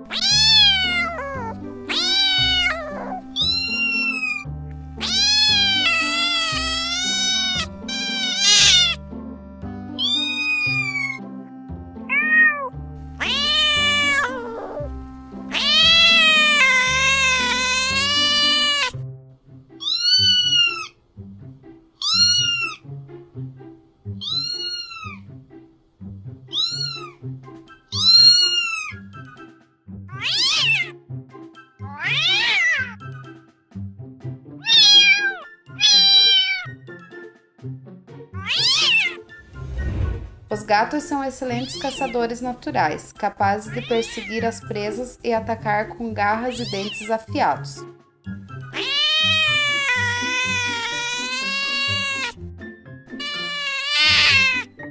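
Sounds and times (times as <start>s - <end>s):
cat meowing: 0.0s - 4.4s, 5.0s - 9.0s, 10.0s - 11.2s, 12.1s - 14.9s, 15.5s - 19.0s, 19.8s - 21.0s, 22.0s - 22.8s, 24.2s - 25.3s, 26.5s - 27.2s, 27.9s - 29.1s, 30.1s - 31.0s, 31.8s - 33.0s, 34.6s - 36.8s, 38.3s - 39.3s, 41.5s - 42.2s, 43.7s - 44.4s, 46.5s - 47.3s, 48.7s - 52.4s, 53.1s - 54.7s
background music: 0.0s - 54.9s.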